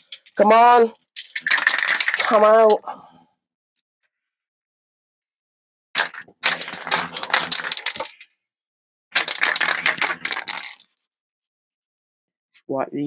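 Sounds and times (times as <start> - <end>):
art supplies clattering: 1.1 - 2.8, 6.0 - 8.3, 9.2 - 11.0.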